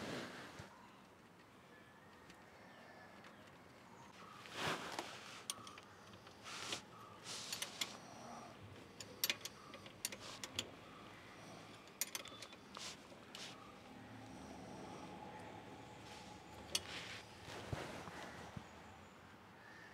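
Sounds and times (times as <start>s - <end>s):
short rustling: 4.3s - 5.5s, 16.6s - 18.6s.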